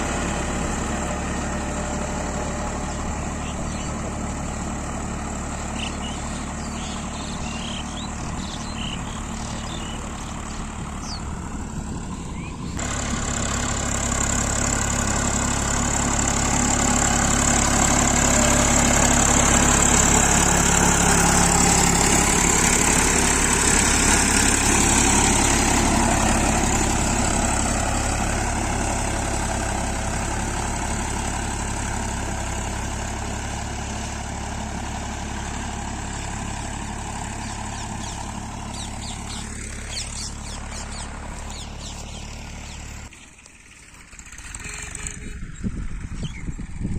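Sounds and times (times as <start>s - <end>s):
tractor diesel engine running: 0.0s - 46.9s.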